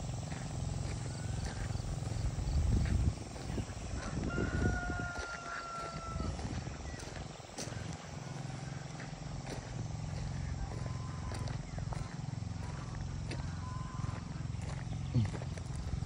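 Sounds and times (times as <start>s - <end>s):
low rumble: 0.6s - 4.7s
rooster crowing: 0.8s - 2.2s, 3.8s - 7.0s.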